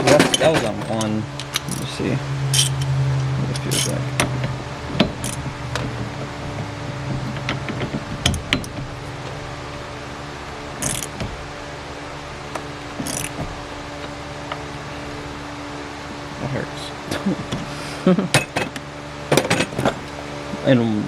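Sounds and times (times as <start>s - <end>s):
hand tool clicking and scraping: 0.0s - 6.1s, 10.8s - 11.5s, 12.5s - 14.6s, 18.3s - 20.0s
steady low hum: 0.0s - 21.0s.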